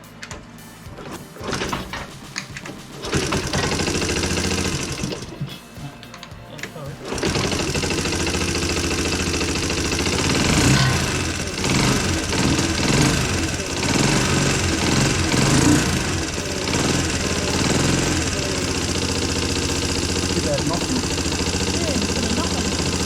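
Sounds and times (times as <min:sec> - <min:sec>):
small motorcycle engine revving: 0:00.9 - 0:05.6, 0:07.0 - 0:23.0.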